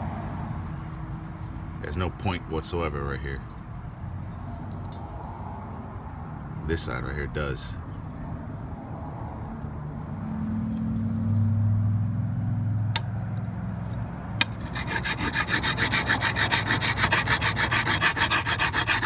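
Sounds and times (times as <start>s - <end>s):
hand file scraping metal blade: 14.4s - 19.0s.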